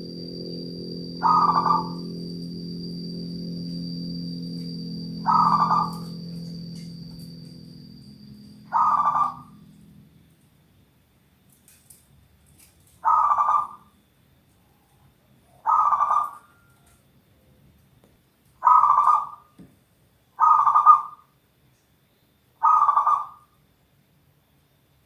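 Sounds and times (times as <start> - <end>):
dove cooing: 1.1 - 2.5, 4.8 - 7.6, 8.6 - 9.7, 13.0 - 13.8, 15.5 - 16.9, 18.6 - 19.5, 20.4 - 21.2, 22.6 - 23.4.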